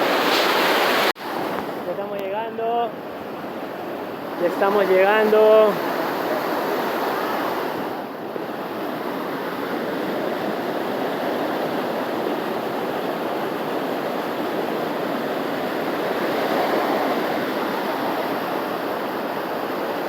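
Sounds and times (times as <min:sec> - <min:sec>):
waterfall rushing: 0:04.4 - 0:06.5.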